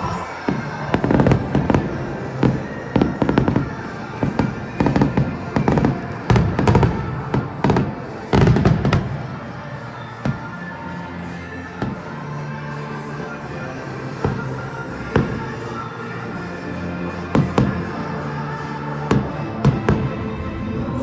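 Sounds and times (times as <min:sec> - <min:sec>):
music playing: 0:00.0 - 0:21.0
fireworks booming: 0:00.5 - 0:09.6, 0:13.2 - 0:15.8, 0:17.2 - 0:18.1, 0:19.1 - 0:20.3.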